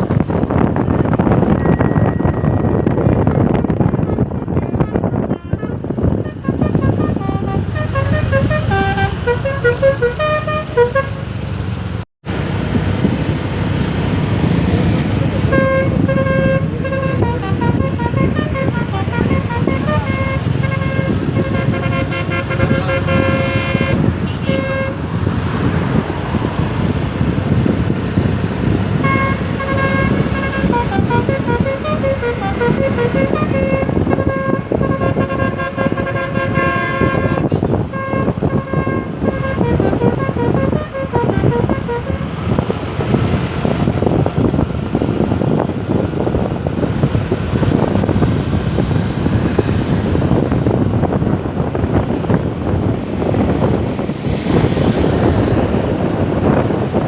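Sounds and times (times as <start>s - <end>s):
traffic noise: 0.0s - 57.0s
wind: 0.0s - 57.0s
musical bus horn: 2.1s - 11.4s, 15.4s - 25.2s, 28.9s - 42.7s.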